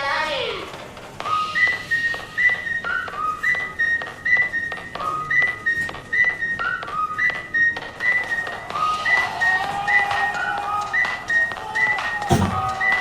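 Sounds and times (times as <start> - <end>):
whistled tune: 1.2 - 13.0.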